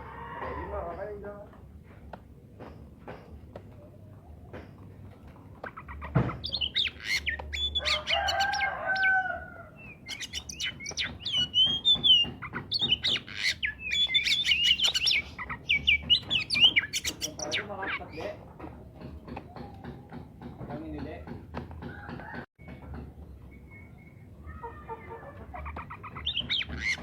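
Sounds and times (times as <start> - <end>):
bird singing: 3.8 - 21.4, 22.6 - 24.9, 25.6 - 27.0.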